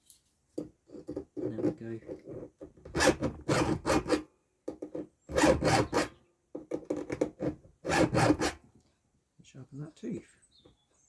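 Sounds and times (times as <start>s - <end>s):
file rasping on chain teeth: 0.9s - 4.2s, 4.9s - 6.1s, 6.8s - 8.6s.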